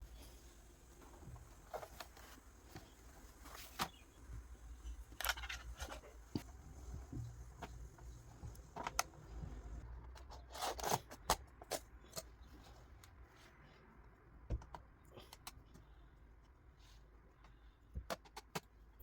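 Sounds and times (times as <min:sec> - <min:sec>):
plastic and metal parts handled: 0:01.1 - 0:13.2.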